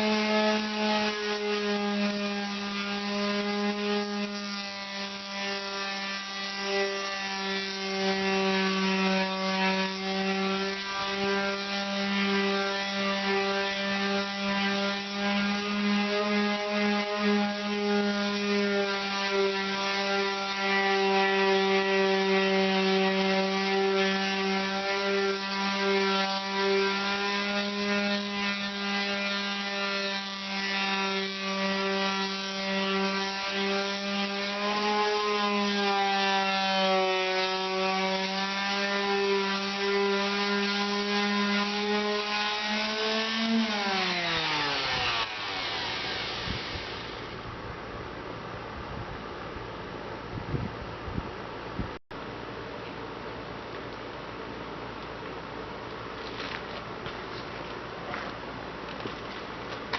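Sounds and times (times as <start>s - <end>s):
power sander humming on metal: 0.0s - 47.5s.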